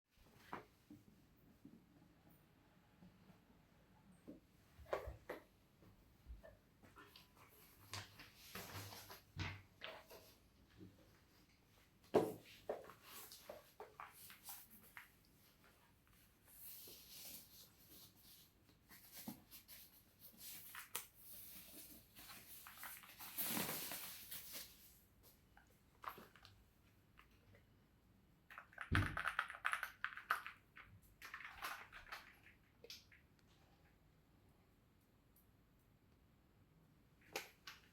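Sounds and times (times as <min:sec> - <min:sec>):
packing material crinkling: 0:19.8 - 0:25.0.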